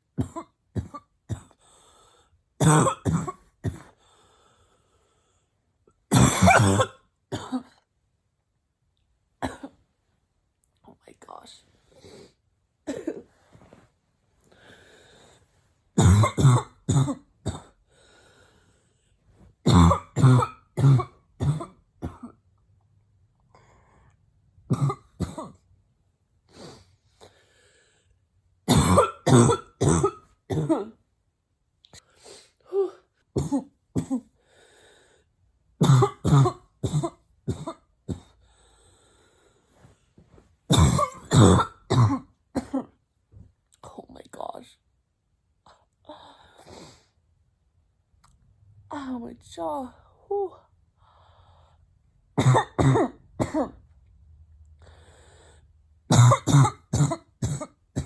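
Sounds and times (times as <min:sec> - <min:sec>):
woman coughing: 0:00.2 - 0:01.6, 0:02.6 - 0:04.0, 0:06.1 - 0:07.8, 0:09.4 - 0:09.8, 0:12.9 - 0:13.3, 0:16.0 - 0:17.8, 0:19.7 - 0:22.4, 0:24.7 - 0:25.6, 0:28.7 - 0:31.0, 0:32.7 - 0:34.3, 0:35.8 - 0:38.3, 0:40.7 - 0:43.0, 0:52.4 - 0:53.8, 0:56.1 - 0:58.0.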